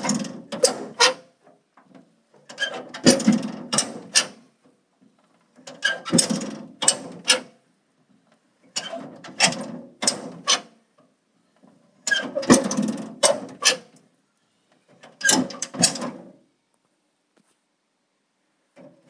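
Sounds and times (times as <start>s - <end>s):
metal door rattling and clanking shut: 0.0s - 1.2s, 2.5s - 4.4s, 5.6s - 7.5s, 8.8s - 10.6s, 12.1s - 13.9s, 15.0s - 16.3s.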